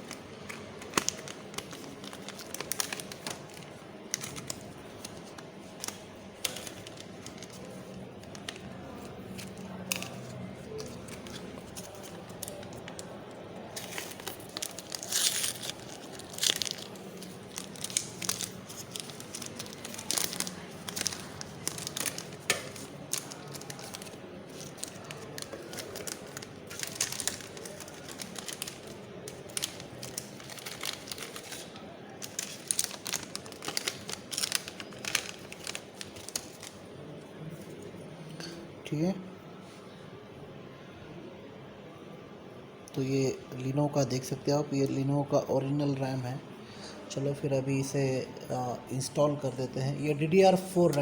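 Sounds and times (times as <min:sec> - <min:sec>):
plastic packaging crinkling: 0:00.0 - 0:36.8.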